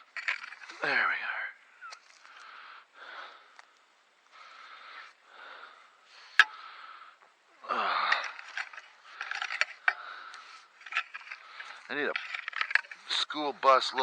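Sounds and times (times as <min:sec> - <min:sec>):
man breathing hard: 0:02.2 - 0:11.9.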